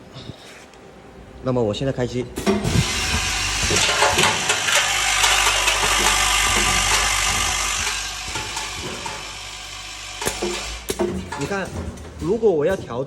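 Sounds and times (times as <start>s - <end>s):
low machine hum: 0.9s - 13.0s
screws rattling in feeder bowl: 3.0s - 12.9s.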